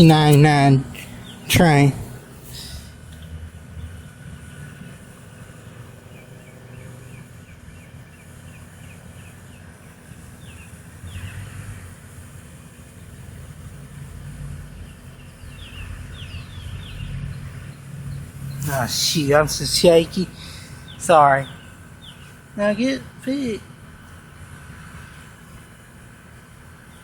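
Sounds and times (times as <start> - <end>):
small bird chirping: 6.1 - 11.4, 14.8 - 22.4.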